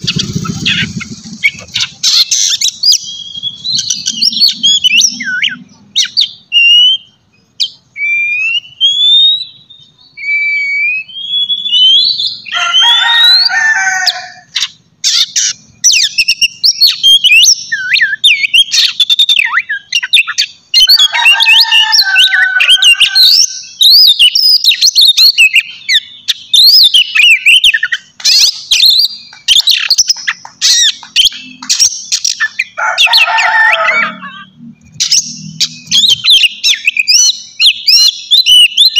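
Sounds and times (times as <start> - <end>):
harsh raspy bird rattles: 0.0 - 3.0, 27.9 - 33.3
bird singing whistled song: 0.0 - 13.5, 14.5 - 32.8, 34.2 - 38.9.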